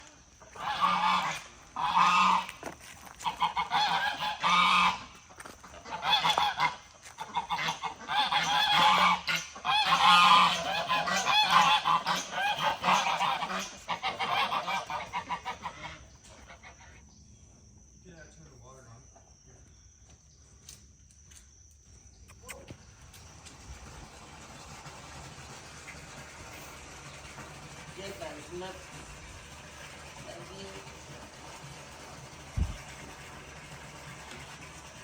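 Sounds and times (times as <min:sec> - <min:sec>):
poultry calling: 0:00.0 - 0:17.0.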